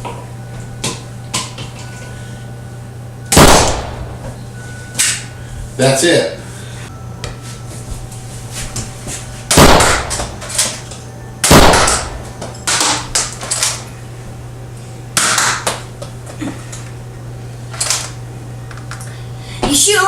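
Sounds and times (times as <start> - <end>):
toy gun shots: 11.4 - 12.1.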